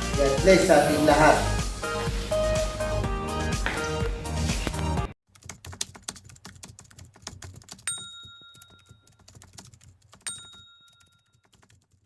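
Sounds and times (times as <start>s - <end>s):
rapid ticking clicks: 5.3s - 12.0s
ringing metallic pings: 7.9s - 9.0s.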